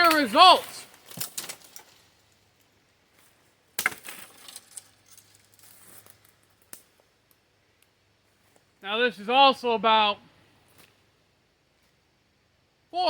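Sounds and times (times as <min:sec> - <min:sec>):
handling rustles: 0:00.0 - 0:07.0.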